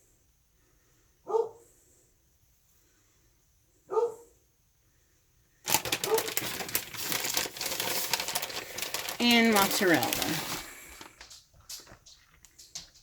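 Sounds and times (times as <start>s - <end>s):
dog barking: 1.2s - 1.6s, 3.9s - 4.4s, 6.0s - 6.4s
loud crinkling: 5.6s - 13.0s.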